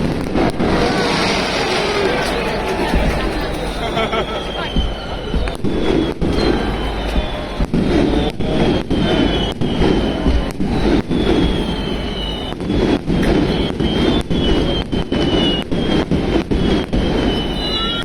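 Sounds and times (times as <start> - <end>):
fireworks bangs: 0.0 - 18.0
fireworks falling whistles: 0.0 - 18.0
low rumble: 0.5 - 8.4.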